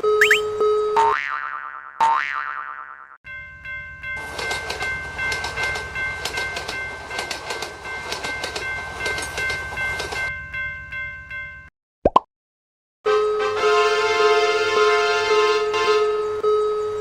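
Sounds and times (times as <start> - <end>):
level-crossing warning signal: 0.0 - 1.0, 13.1 - 17.0.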